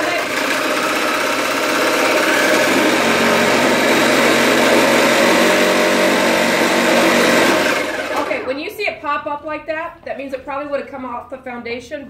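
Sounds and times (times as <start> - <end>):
shake table motor buzzing: 0.0 - 8.5.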